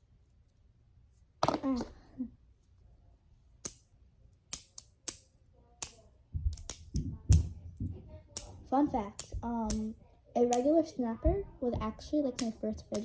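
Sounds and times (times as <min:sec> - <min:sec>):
plastic toy links clicking: 0:04.5 - 0:07.5, 0:12.4 - 0:13.0.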